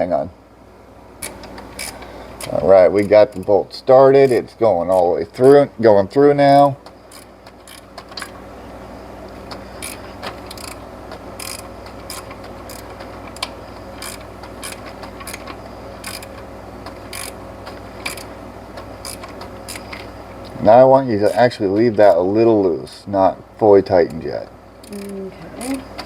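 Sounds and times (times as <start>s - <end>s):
socket ratchet clicking: 1.2s - 3.5s, 7.1s - 8.4s, 9.8s - 17.4s, 18.0s - 20.0s.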